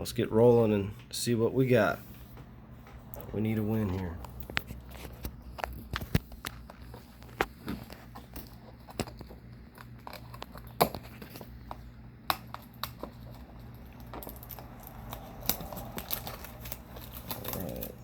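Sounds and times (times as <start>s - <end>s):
plastic wrapping tearing and crinkling: 4.4s - 18.0s.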